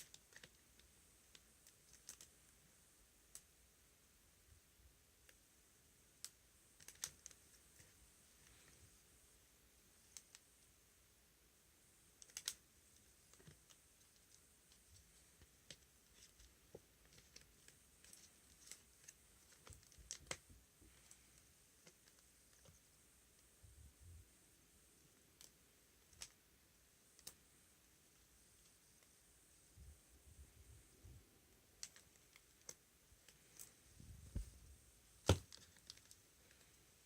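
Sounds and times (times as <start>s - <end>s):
faint clicks and taps: 12.2s - 23.5s.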